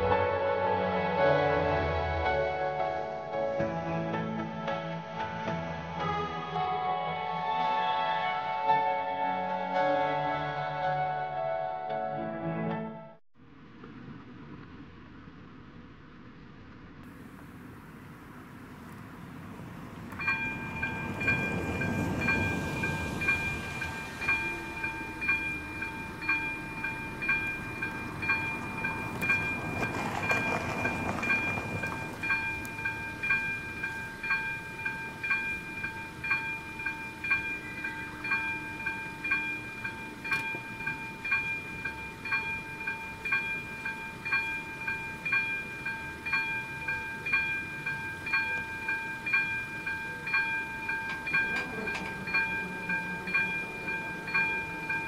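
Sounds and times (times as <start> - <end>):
passing vehicle rumbling: 13.4 - 55.0
level crossing warning bell: 20.0 - 55.0.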